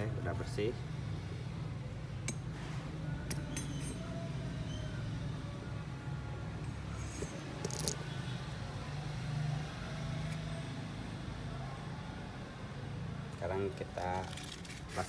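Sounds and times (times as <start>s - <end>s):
low mechanical hum: 0.0s - 15.0s
metallic clinks of tools: 3.3s - 4.2s, 7.0s - 8.2s.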